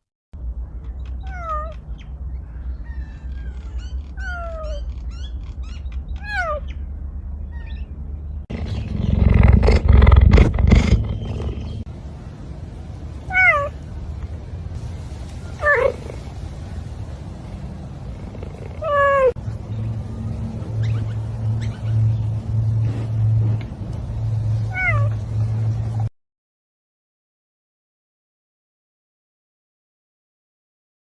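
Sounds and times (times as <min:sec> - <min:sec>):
cats meowing: 0:01.2 - 0:01.8, 0:06.2 - 0:06.7, 0:13.3 - 0:13.8, 0:18.2 - 0:19.4, 0:24.7 - 0:25.1
rough noise: 0:08.3 - 0:12.4.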